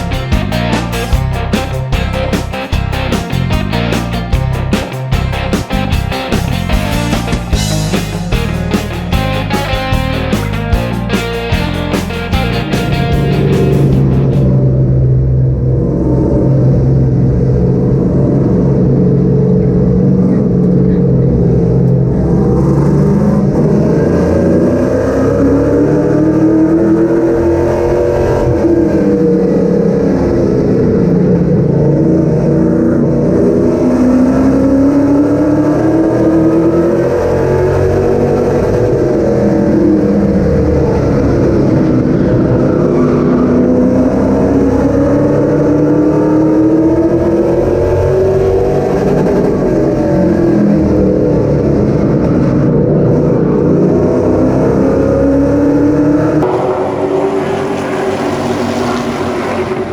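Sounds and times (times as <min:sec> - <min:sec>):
race car engines running hard: 0:00.0 - 0:59.9.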